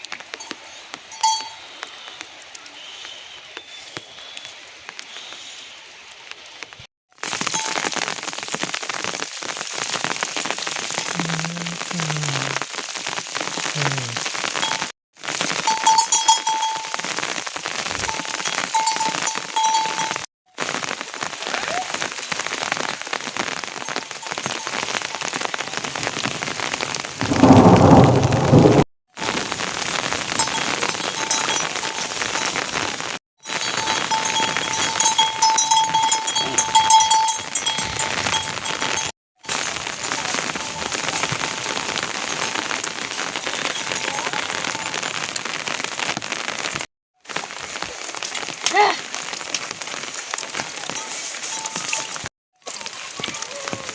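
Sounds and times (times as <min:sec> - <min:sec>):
steady rain: 0:00.0 - 0:53.9
thunder rumble: 0:25.8 - 0:32.9.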